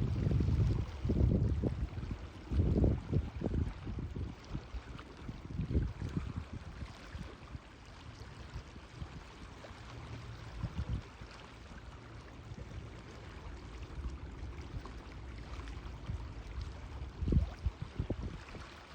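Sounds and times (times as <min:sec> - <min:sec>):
wind buffeting microphone: 0:00.0 - 0:07.7, 0:10.4 - 0:11.2, 0:12.5 - 0:18.9
sea water lapping: 0:00.0 - 0:18.9.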